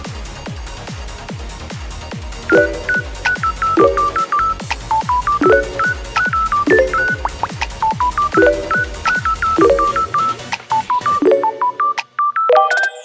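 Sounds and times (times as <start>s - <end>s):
kick-drum beat: 0.1s - 11.2s
repeated chords: 2.5s - 12.7s
bleeping synth notes: 2.5s - 13.0s.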